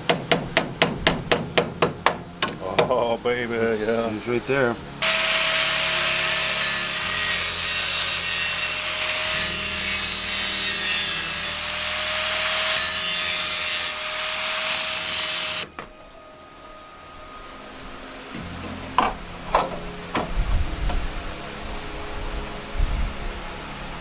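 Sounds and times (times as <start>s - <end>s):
power tool grinding sheet metal: 5.0s - 15.7s.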